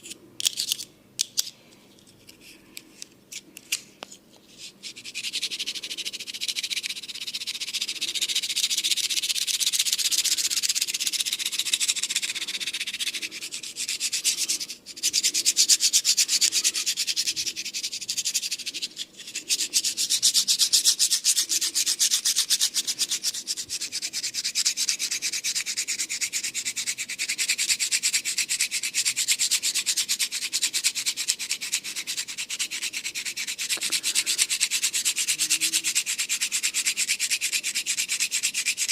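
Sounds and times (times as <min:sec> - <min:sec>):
hands rubbing hair and scalp: 0:32.3 - 0:37.0.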